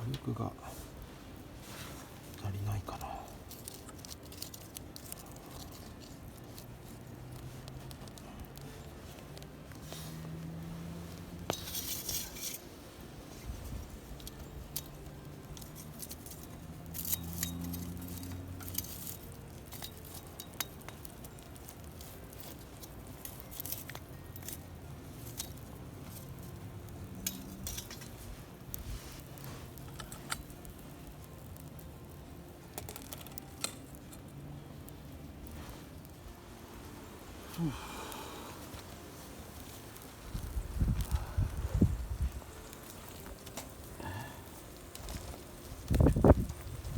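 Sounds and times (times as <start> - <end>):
metal utensils clinking: 11.4 - 12.6, 27.1 - 28.2.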